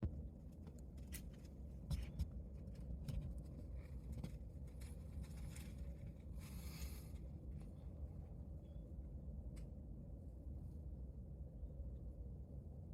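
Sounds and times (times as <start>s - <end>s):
light clicks and rustles: 0.6s - 7.8s.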